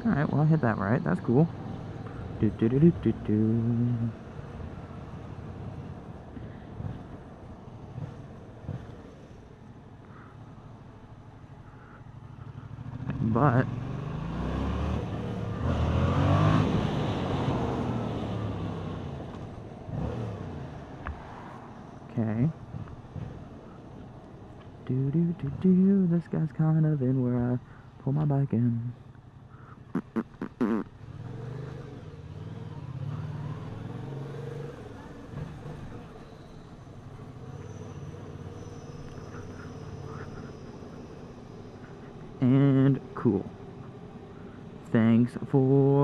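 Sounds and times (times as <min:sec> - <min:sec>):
motorcycle engine accelerating: 0:12.3 - 0:21.0, 0:30.0 - 0:36.4
vehicle engine running: 0:29.1 - 0:46.0.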